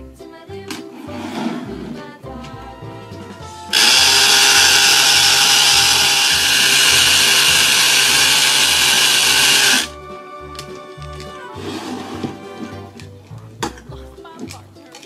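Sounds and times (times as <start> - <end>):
background music with beat: 0.0 - 5.5
drill-like whirring hiss: 3.7 - 9.9.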